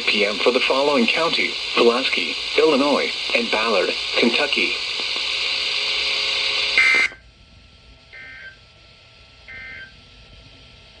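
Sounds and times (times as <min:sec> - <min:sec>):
steady radio hiss: 0:00.0 - 0:11.0.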